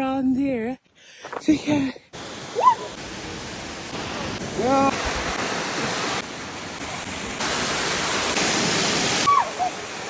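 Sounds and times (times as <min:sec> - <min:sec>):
steady rushing noise: 0:02.2 - 0:09.3.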